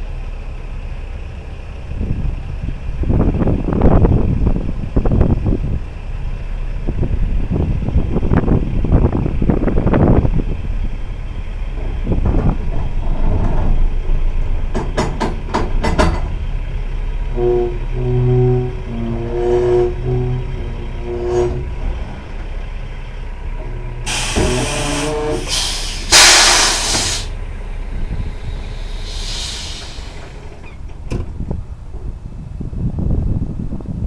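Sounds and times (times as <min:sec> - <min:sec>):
heavy vehicle rumbling: 0:00.0 - 0:34.0
multi-tone horn: 0:17.3 - 0:22.0, 0:24.0 - 0:26.3.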